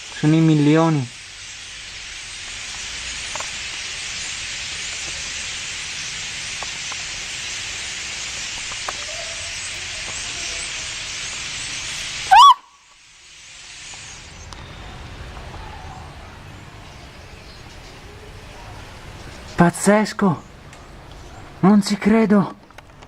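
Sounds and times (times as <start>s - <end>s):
flock of birds chattering: 0.0s - 22.8s
loud rising bird call: 11.9s - 12.9s.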